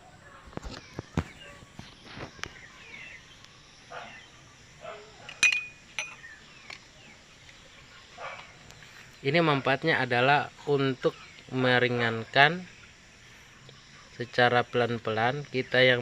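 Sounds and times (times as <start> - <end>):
drinking glass being handled: 5.3 - 6.3
sharp glass clink: 5.4 - 6.3.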